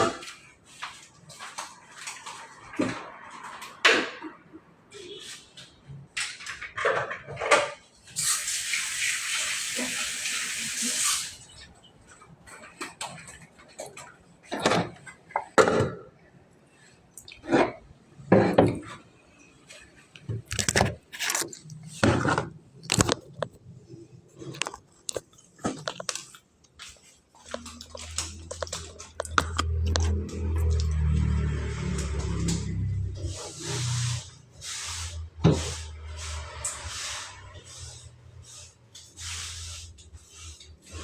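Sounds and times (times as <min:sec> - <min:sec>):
kitchen tap running: 0:08.2 - 0:11.6.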